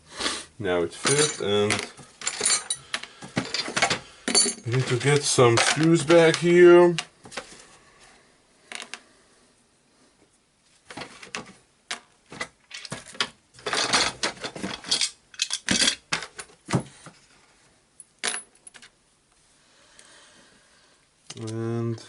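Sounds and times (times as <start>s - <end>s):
metal screws clinking: 1.0s - 6.4s, 14.7s - 16.0s.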